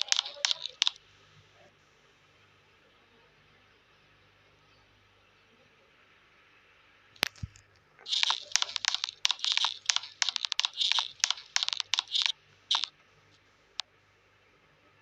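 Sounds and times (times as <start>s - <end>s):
rapid clicks and crackles: 0.0s - 1.0s, 7.2s - 12.9s
sharp click: 0.0s - 1.0s, 7.2s - 12.9s.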